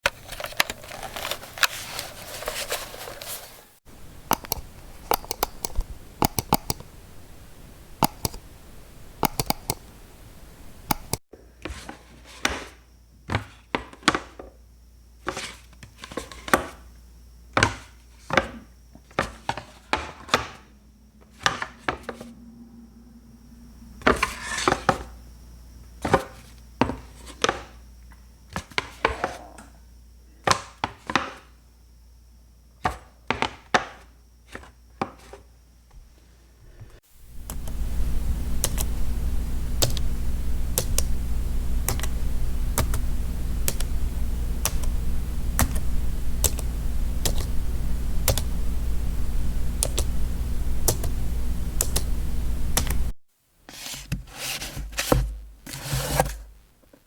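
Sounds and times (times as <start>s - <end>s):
button presses clicking: 4.3s - 6.9s, 8.0s - 8.4s, 9.2s - 9.9s, 10.8s - 11.2s.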